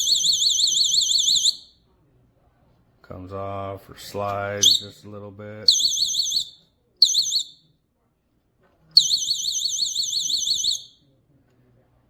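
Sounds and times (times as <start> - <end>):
shrill electronic alarm siren: 0.0 - 1.7, 5.7 - 7.6, 9.0 - 11.0.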